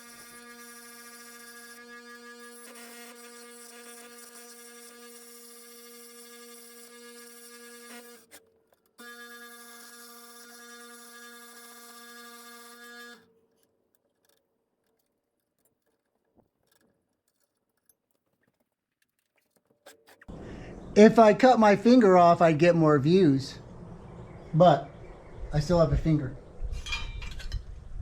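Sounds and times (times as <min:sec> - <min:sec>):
power tool whining: 0:00.0 - 0:13.3.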